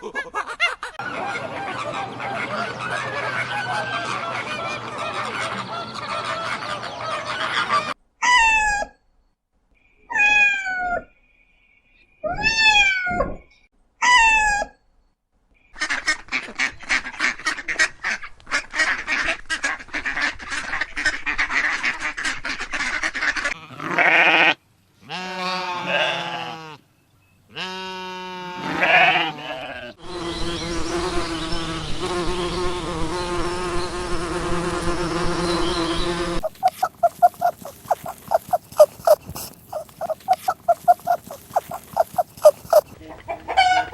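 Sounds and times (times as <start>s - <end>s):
bleating: 23.6s - 26.8s, 27.5s - 30.0s, 36.4s - 42.9s
insects buzzing: 30.2s - 42.9s
fowl honking: 36.4s - 43.9s.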